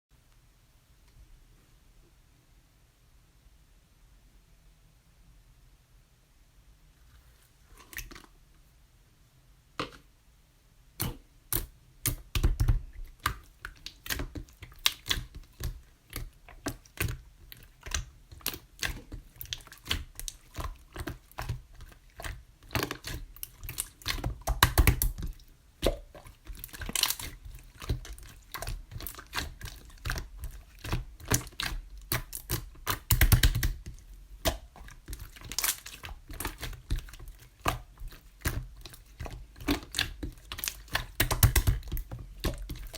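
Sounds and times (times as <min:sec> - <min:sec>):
slime clicking and popping: 0:22.2 - 0:42.9.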